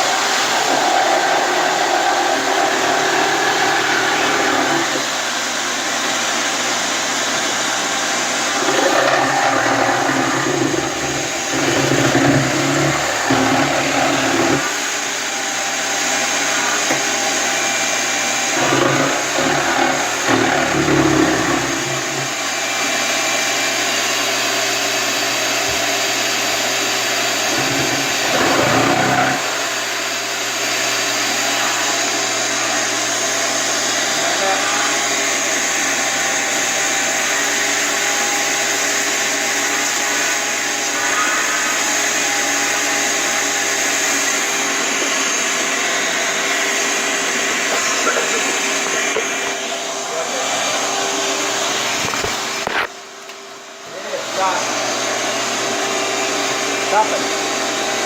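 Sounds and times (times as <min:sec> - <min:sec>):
motor whirring: 0:00.0 - 0:05.2, 0:08.5 - 0:17.6, 0:18.4 - 0:22.4, 0:27.5 - 0:29.8.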